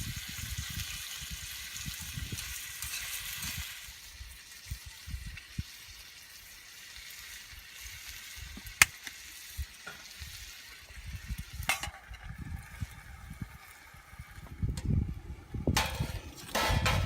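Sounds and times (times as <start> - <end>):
food sizzling in a pan: 0.0 - 14.6.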